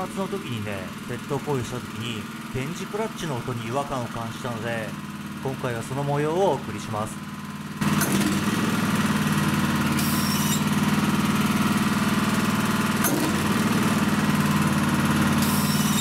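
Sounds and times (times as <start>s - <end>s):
snowblower engine running: 0.0s - 16.0s
clutch squeals: 10.0s - 10.7s, 15.4s - 16.0s.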